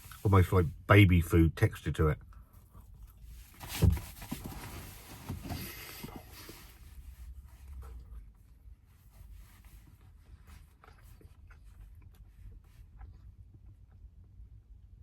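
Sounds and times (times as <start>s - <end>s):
small handling noises: 2.2s - 14.3s
faint chewing: 10.0s - 14.2s.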